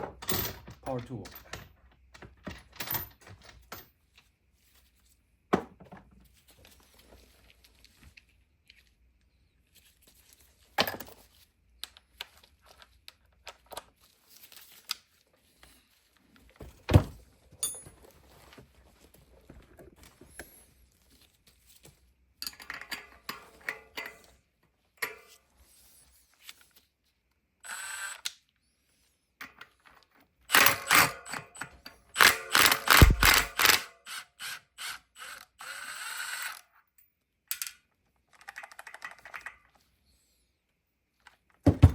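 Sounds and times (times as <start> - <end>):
fast loud mechanical rattling: 32.5 - 33.8.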